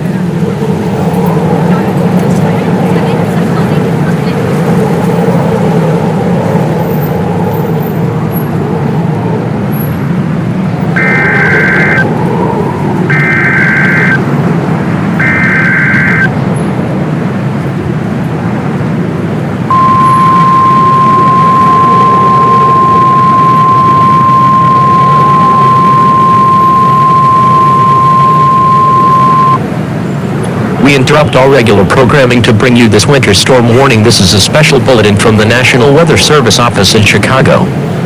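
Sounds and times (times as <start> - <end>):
low rumbling drone: 0.0 - 32.0
steady warning alarm tone: 10.9 - 14.3, 15.2 - 16.4, 19.7 - 29.6
harsh buzzing data bursts: 11.0 - 12.0, 13.1 - 14.2, 15.2 - 16.3, 19.7 - 29.6.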